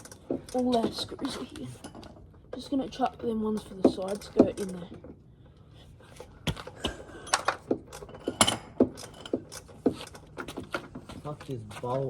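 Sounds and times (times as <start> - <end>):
metal screws and tools clinking: 7.2 - 10.9.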